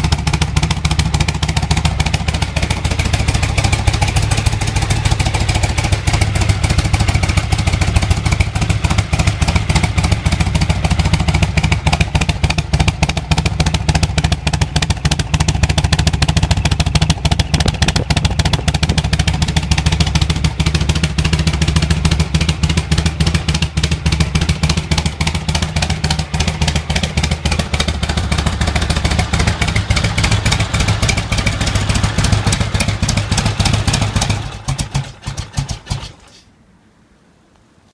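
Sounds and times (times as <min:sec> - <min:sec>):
motorcycle engine idling: 0:00.0 - 0:36.4.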